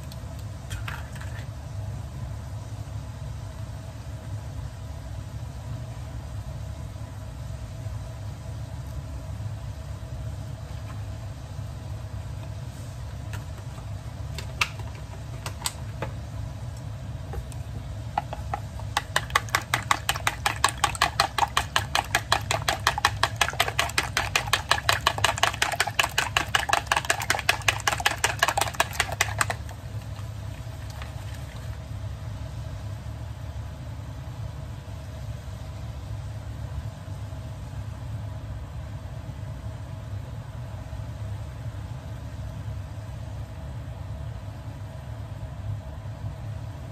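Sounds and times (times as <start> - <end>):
steady low hum: 0.0 - 46.9
utensil clicking against dish: 14.4 - 15.8, 18.2 - 31.3.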